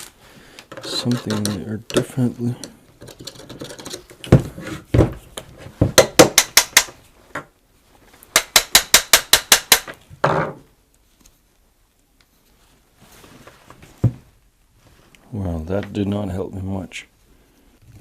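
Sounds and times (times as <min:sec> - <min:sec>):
heavy knocks on housing: 0:04.3 - 0:05.2, 0:05.8 - 0:06.9.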